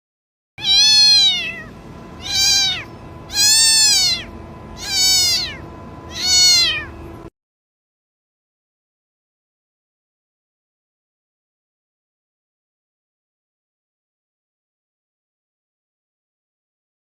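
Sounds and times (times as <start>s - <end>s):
cat meowing: 0.6s - 7.0s.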